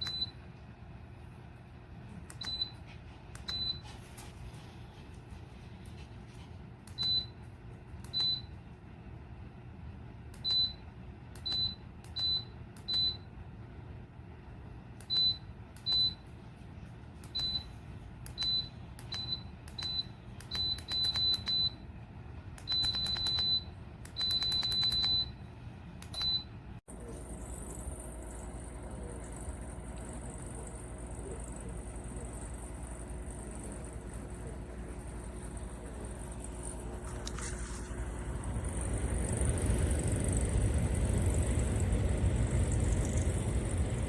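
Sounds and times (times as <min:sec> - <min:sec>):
low steady hum: 0:00.0 - 0:44.0
electronic key beeps: 0:18.3 - 0:21.8, 0:22.6 - 0:25.4.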